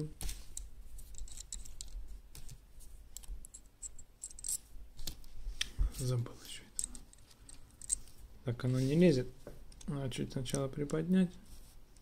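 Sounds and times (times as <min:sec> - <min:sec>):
small metal parts clicking: 0:00.5 - 0:02.0, 0:03.2 - 0:04.7, 0:06.8 - 0:08.1.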